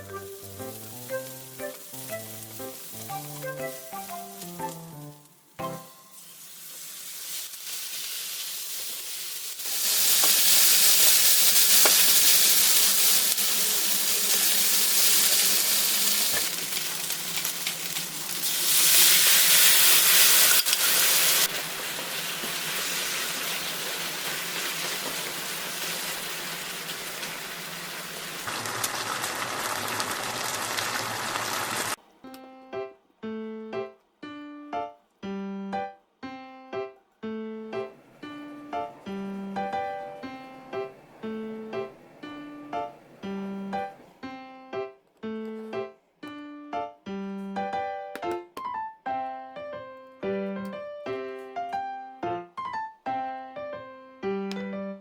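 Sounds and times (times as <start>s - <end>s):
piano music: 0.0s - 6.4s, 32.0s - 55.0s
food sizzling in a frying pan: 0.0s - 32.0s.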